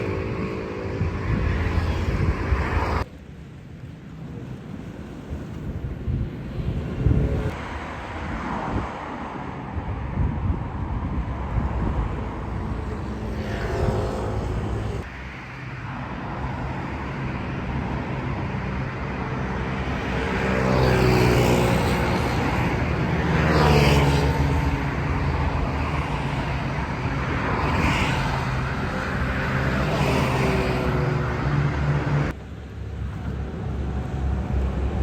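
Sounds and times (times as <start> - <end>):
loud vehicle passing: 0.0 - 3.0, 11.6 - 15.1, 17.7 - 32.4
vehicles passing: 0.0 - 35.0.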